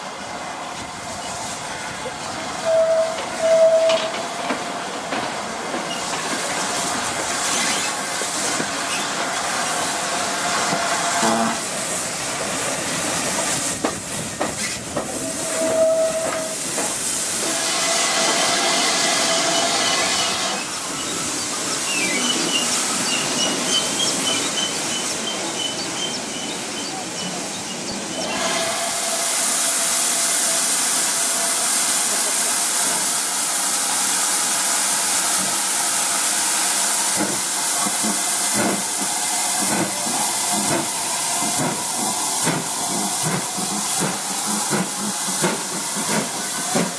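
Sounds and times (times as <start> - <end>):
loud hiss of steam: 0.0 - 46.9
steam locomotive running: 0.0 - 46.9
locomotive whistle: 2.6 - 4.2, 11.2 - 11.6, 15.2 - 16.6, 17.4 - 20.7.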